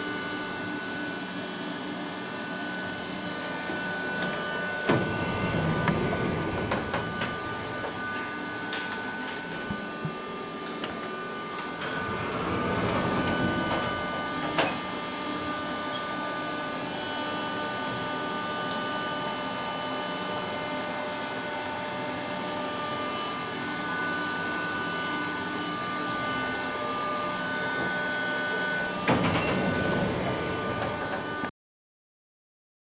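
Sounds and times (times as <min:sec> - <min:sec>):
elevator hum: 0:02.9 - 0:10.3, 0:10.9 - 0:16.1, 0:28.9 - 0:31.4
elevator doors sliding rumble: 0:03.4 - 0:08.7, 0:11.2 - 0:17.1, 0:28.4 - 0:31.4
whining tones: 0:04.0 - 0:08.4.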